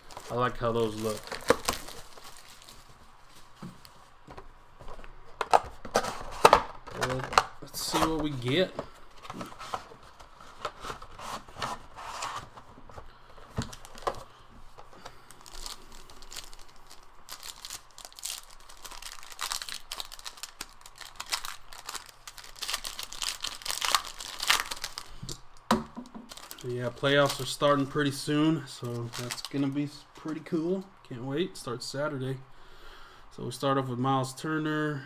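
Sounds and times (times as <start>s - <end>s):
wrappers crinkling and tearing: 0.0s - 3.9s, 5.5s - 25.4s, 26.3s - 28.2s, 28.8s - 30.4s.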